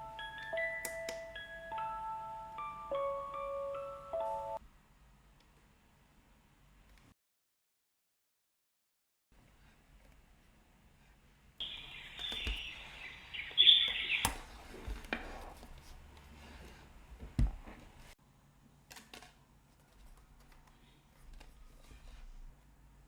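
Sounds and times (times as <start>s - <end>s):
birds chirping through speaker: 11.6s - 14.6s.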